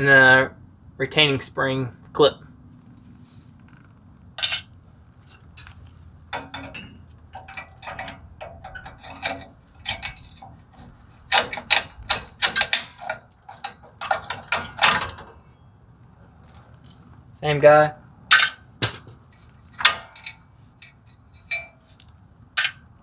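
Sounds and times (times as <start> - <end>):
metal hardware clicking and clinking: 4.4 - 15.5, 18.3 - 23.0.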